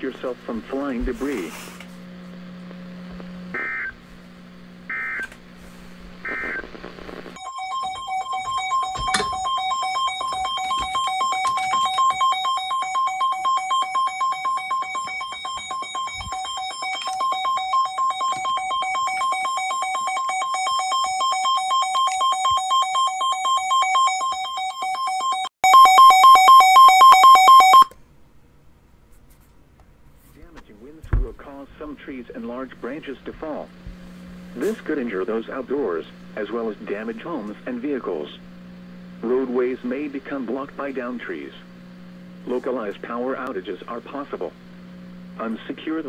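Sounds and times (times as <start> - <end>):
short data bursts: 6.2 - 7.4
two-tone attention signal: 7.4 - 19.6, 20.4 - 27.9.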